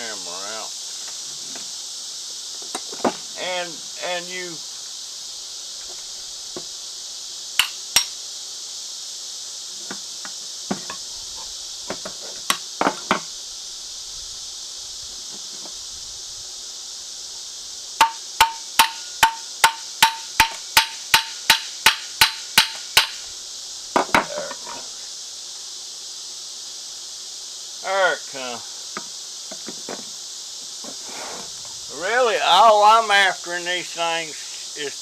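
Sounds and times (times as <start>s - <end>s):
katydids buzzing: 0.0s - 35.0s
hammer striking metal motor: 18.0s - 23.2s.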